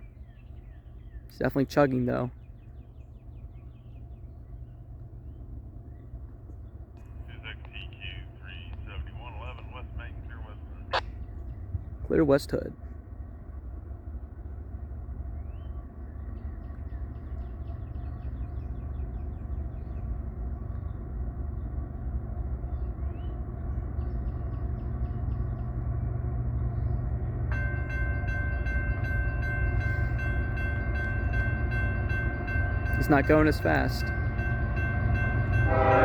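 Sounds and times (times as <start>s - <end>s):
freight train rumbling past: 0.0s - 36.0s
train horn chord: 34.4s - 36.0s.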